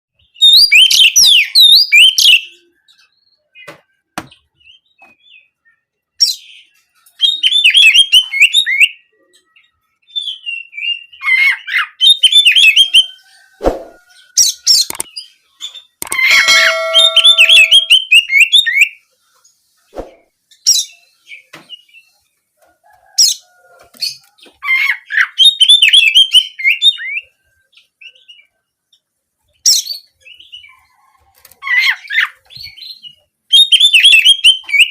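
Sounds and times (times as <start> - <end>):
bird singing warbling chirps: 13.8 - 18.6
sharp clicks: 14.8 - 15.1, 16.0 - 16.3.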